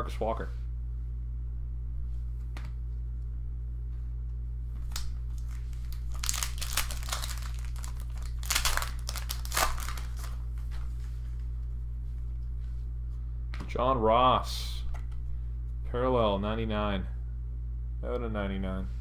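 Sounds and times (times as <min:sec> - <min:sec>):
foil wrapper crinkling and tearing: 0:04.9 - 0:10.5.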